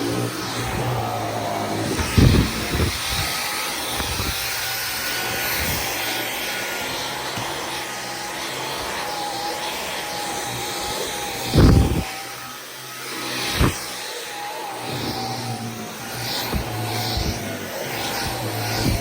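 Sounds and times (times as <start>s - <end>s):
vacuum cleaner running: 0.0s - 19.0s
low thumps: 1.7s - 4.4s, 11.6s - 12.0s, 16.4s - 17.5s.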